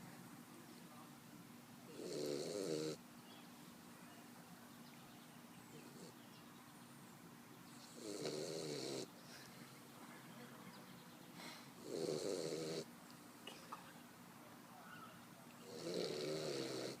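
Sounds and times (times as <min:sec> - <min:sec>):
dog snoring: 0:01.9 - 0:03.0, 0:07.8 - 0:09.1, 0:11.8 - 0:12.9, 0:15.6 - 0:17.0.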